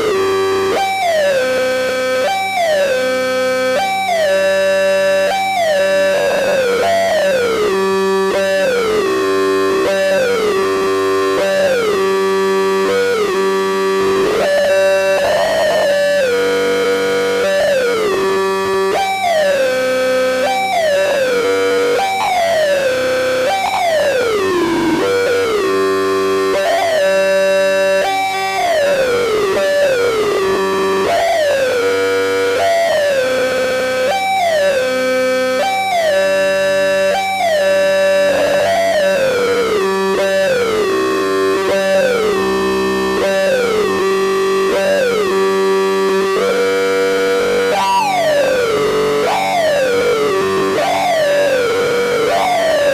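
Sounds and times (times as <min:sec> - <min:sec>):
synthesizer tones sliding down: 0:05.6 - 0:07.8, 0:11.4 - 0:33.2, 0:37.4 - 0:40.9
steady low drone: 0:05.6 - 0:33.9.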